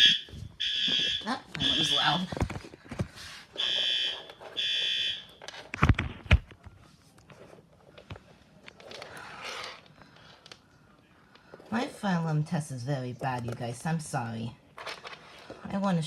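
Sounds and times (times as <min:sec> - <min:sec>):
fire alarm horn blasts: 0:00.0 - 0:02.3, 0:03.6 - 0:05.4.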